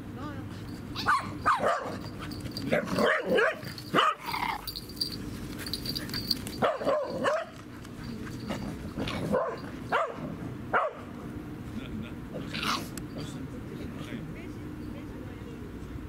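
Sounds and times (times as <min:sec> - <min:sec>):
dog barking: 0:01.0 - 0:02.0, 0:02.7 - 0:04.4, 0:06.6 - 0:07.6, 0:09.2 - 0:11.1.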